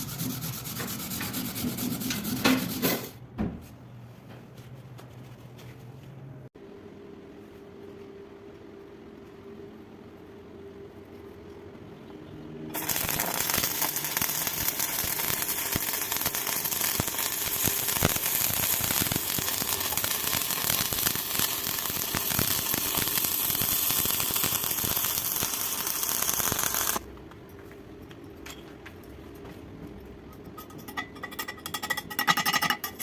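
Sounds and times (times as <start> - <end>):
welding arc crackling and sizzling: 12.7 - 27.1.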